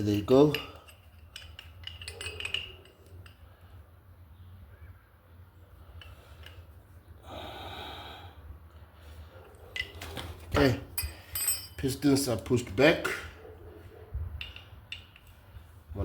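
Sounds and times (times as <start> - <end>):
breathy exhale: 7.2 - 8.5.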